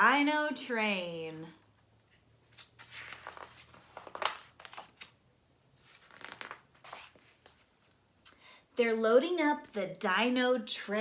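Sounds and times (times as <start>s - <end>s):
book pages turning: 2.5s - 5.2s, 5.8s - 8.0s.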